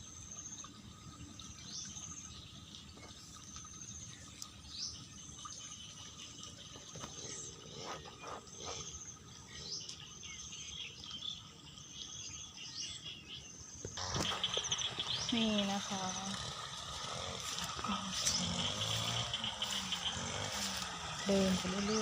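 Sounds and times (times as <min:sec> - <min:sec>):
insects trilling in pulsed bursts: 0:14.0 - 0:22.0
steady low rush: 0:14.3 - 0:22.0.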